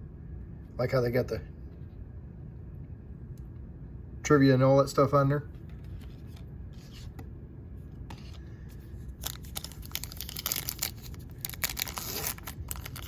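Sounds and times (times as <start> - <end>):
foil wrapper tearing and crinkling: 9.1 - 13.0.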